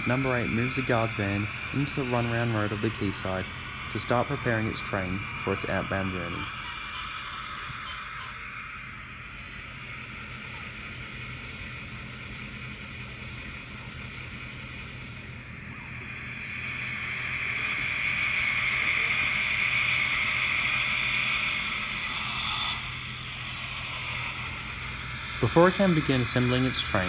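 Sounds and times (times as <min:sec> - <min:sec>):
model train motor and wheels: 0:00.0 - 0:27.0.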